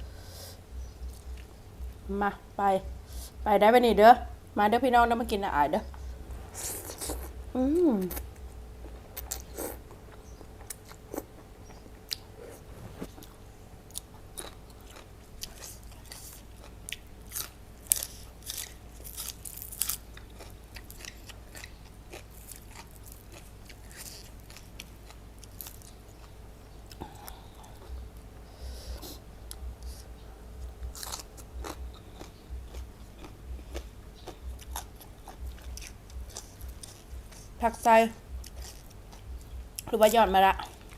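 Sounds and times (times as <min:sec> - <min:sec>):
person chewing crunchy food: 0:06.5 - 0:07.4, 0:08.1 - 0:28.0, 0:30.6 - 0:37.6, 0:38.3 - 0:39.9.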